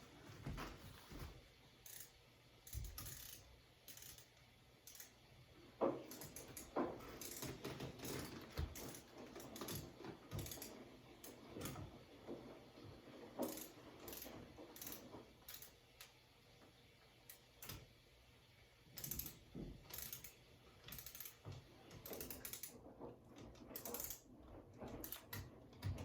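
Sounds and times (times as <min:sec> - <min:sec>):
ratcheting screwdriver clicks: 0:02.7 - 0:04.3.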